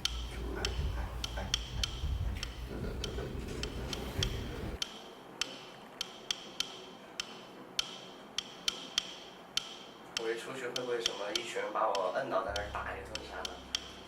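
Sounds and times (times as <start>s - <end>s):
low rumble: 0.0s - 4.8s
clock-like ticking: 0.0s - 14.0s.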